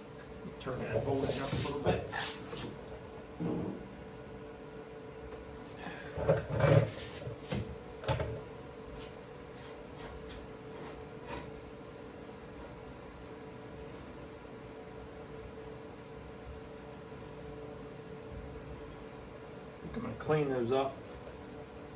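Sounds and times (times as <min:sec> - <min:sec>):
steady hum: 0:00.0 - 0:21.9.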